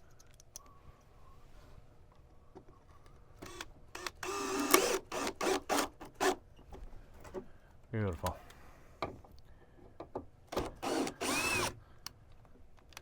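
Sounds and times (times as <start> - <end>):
faint whistled tone: 0.6 - 1.8
cordless drill running in bursts: 3.5 - 6.4, 10.6 - 11.8.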